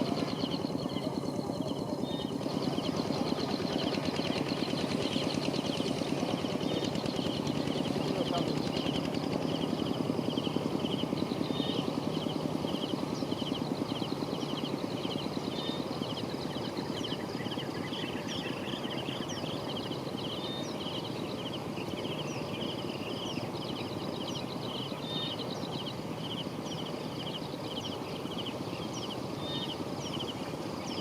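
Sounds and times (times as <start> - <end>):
small motor running: 0.0 - 17.6.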